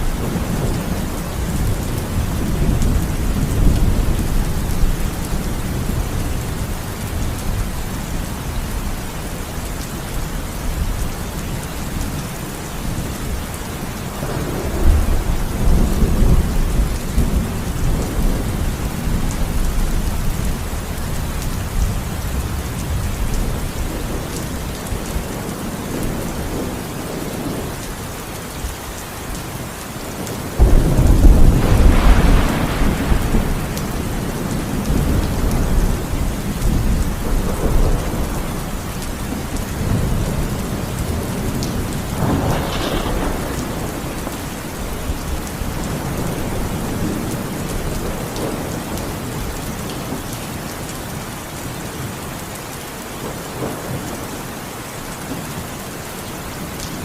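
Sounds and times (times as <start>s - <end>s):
thunder clap and rumble: 0.0s - 8.9s, 12.8s - 28.0s, 30.2s - 50.4s
heavy rain falling: 0.0s - 57.0s.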